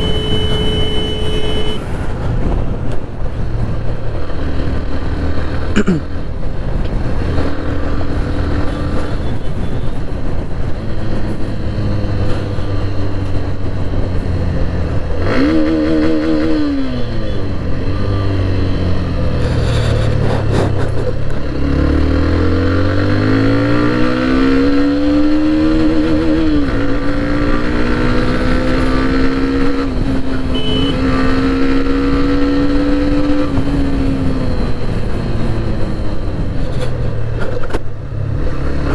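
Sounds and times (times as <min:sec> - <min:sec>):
motorcycle engine revving: 0:10.7 - 0:38.9.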